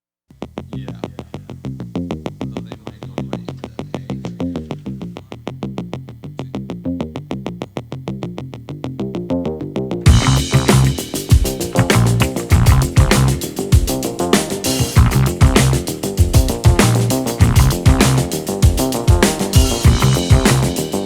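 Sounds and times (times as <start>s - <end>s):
fast drum machine beat: 0.4s - 5.2s, 10.1s - 21.0s
synthesizer line: 10.1s - 21.0s.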